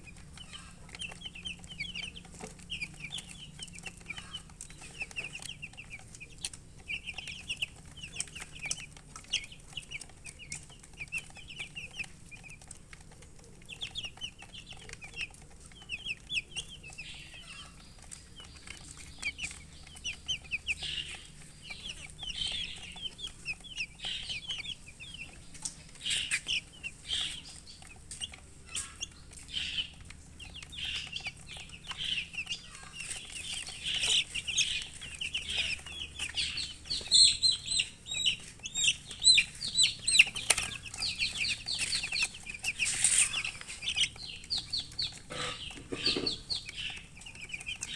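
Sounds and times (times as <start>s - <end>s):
baby chicks peeping: 0.0s - 47.9s.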